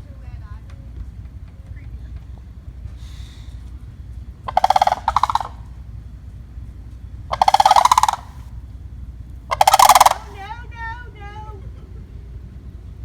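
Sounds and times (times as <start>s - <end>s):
cranes rattling calls: 3.0s - 6.1s, 7.3s - 8.6s, 9.5s - 10.5s.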